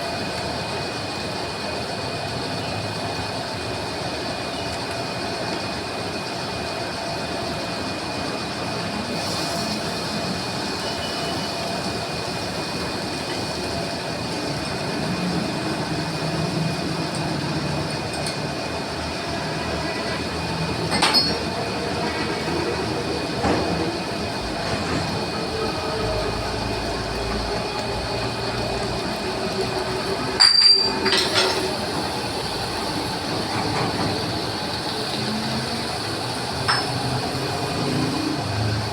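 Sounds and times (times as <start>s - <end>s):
metal lathe droning: 0.0s - 38.9s
sharp metallic clinks: 30.4s - 31.5s.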